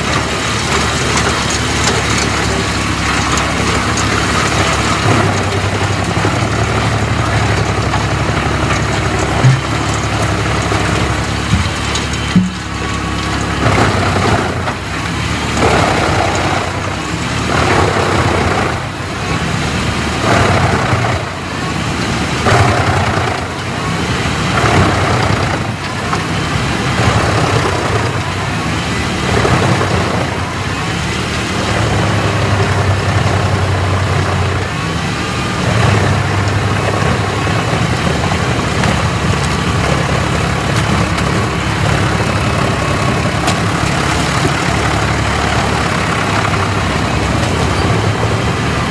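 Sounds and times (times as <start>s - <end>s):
wood chipper engine running: 0.0s - 48.9s
wood chipper grinding wood: 0.0s - 48.9s.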